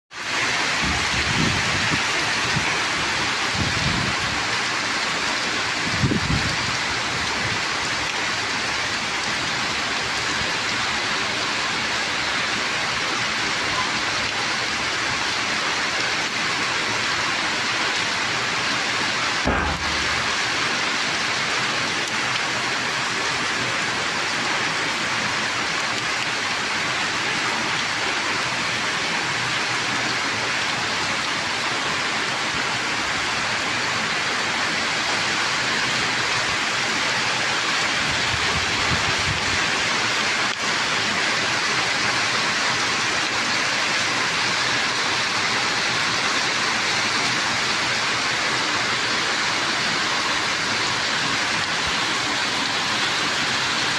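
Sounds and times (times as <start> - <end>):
heavy rain: 0.1 - 53.9
low rumble: 19.5 - 20.8.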